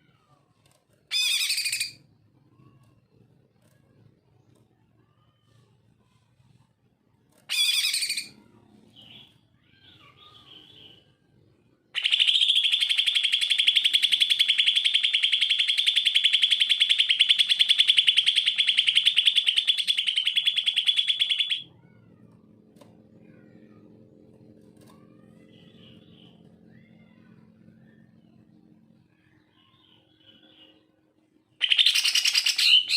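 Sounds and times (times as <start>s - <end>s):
bird singing with fast trill: 12.0s - 22.0s, 25.0s - 32.9s.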